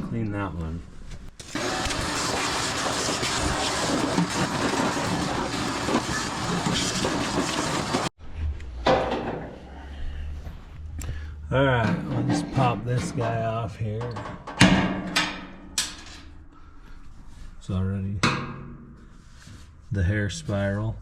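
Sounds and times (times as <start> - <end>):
vacuum cleaner running: 1.4 - 8.1.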